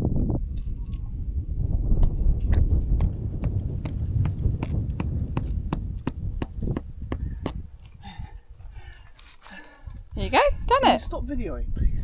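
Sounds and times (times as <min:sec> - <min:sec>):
wind buffeting microphone: 0:01.2 - 0:08.9.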